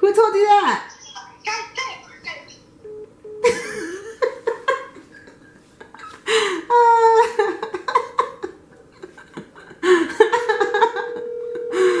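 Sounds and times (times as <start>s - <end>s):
woman laughing and giggling: 3.4s - 12.0s.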